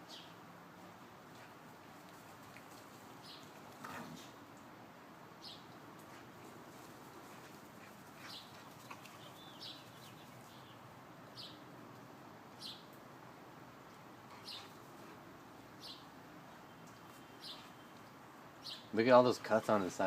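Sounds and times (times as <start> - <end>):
background hiss: 0.0 - 20.0
bird chirping faintly: 15.8 - 19.0.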